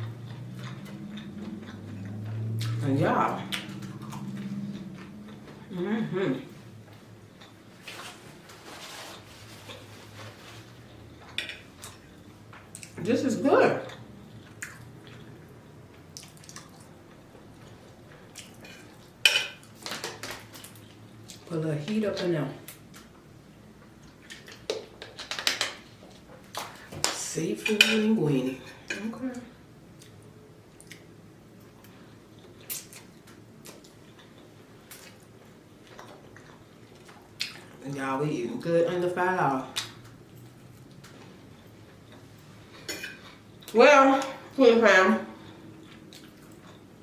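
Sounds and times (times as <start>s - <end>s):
wet chewing smacks: 13.9s - 17.2s.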